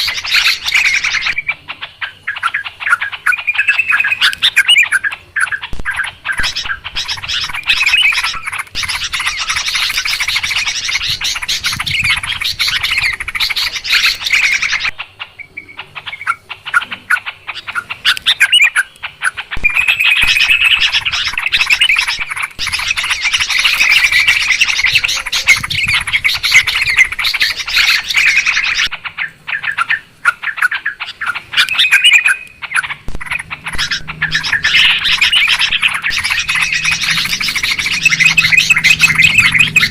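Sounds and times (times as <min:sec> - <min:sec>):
bulbuls chattering: 0:00.0 - 0:39.9.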